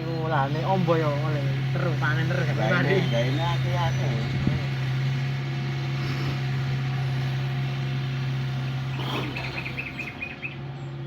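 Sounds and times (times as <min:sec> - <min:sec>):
diesel engine running: 0:00.0 - 0:11.0.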